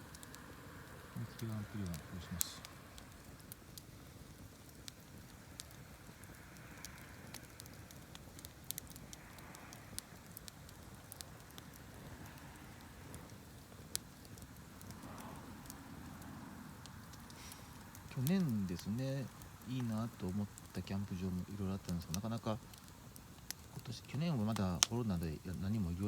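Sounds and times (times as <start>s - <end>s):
campfire crackling and popping: 0.0s - 26.0s
low steady background noise: 0.0s - 26.0s.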